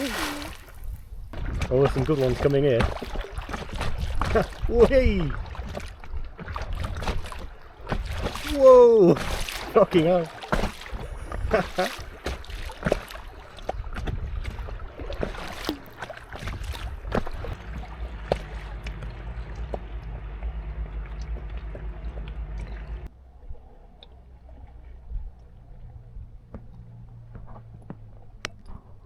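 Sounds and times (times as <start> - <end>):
wind rumble on microphone: 0.0 - 8.8, 10.8 - 13.0, 13.6 - 15.6, 16.3 - 29.0
water splashing against kayak: 0.0 - 23.1.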